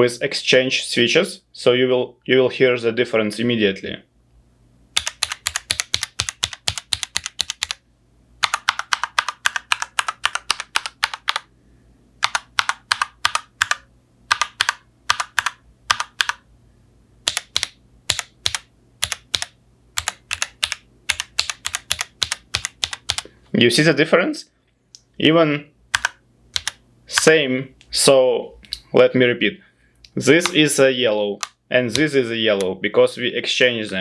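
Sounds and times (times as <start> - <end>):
mechanical keyboard typing: 5.0 - 7.8, 8.4 - 11.5, 12.2 - 16.4, 17.2 - 23.3, 25.9 - 27.3.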